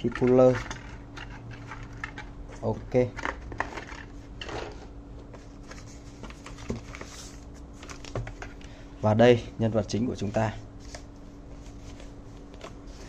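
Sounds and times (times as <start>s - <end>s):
packaging rustling: 5.4s - 8.6s.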